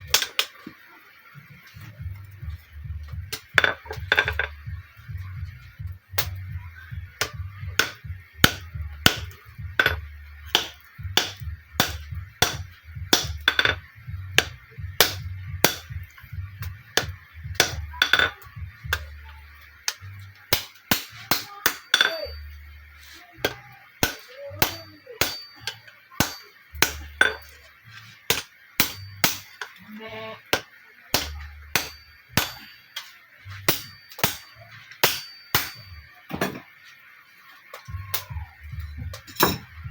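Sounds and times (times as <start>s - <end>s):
hammer striking iron on anvil: 0.1s - 0.6s, 3.3s - 4.7s, 6.1s - 6.5s, 7.2s - 19.2s, 19.8s - 22.6s, 23.4s - 27.6s, 28.3s - 29.8s, 30.5s - 36.7s, 39.0s - 39.8s
background music: 1.2s - 29.5s.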